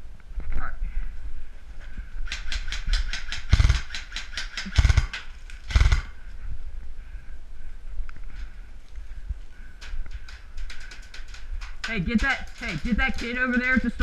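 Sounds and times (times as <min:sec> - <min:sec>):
airsoft rifle firing shots: 0:02.3 - 0:06.2.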